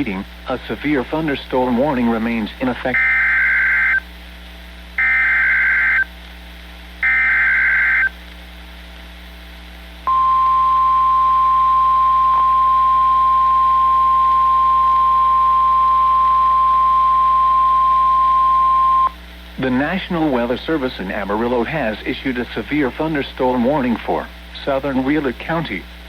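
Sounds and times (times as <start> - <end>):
steady warning alarm tone: 2.9 - 4.0, 5.0 - 6.1, 7.0 - 8.1, 10.1 - 19.2
raspy data bursts: 5.0 - 6.1, 7.0 - 8.2.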